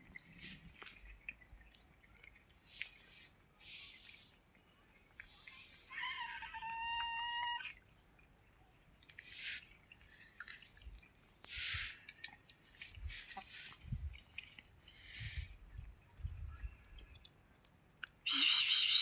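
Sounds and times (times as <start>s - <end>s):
soft hissing or rustling: 0.2s - 1.3s, 2.5s - 6.0s, 9.0s - 15.7s.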